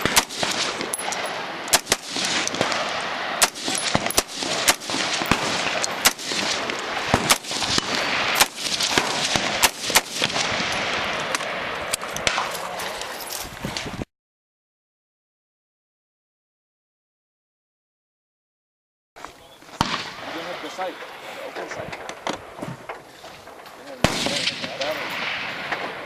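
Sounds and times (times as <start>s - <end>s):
rifle shots: 0.0s - 12.8s, 19.8s - 20.9s, 24.0s - 26.0s.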